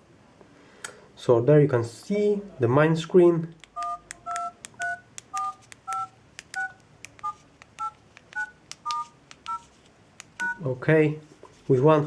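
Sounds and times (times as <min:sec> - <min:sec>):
key press clicks: 0:03.6 - 0:09.6, 0:10.2 - 0:10.6
keypad two-tone beeps: 0:03.8 - 0:09.6, 0:10.4 - 0:10.6.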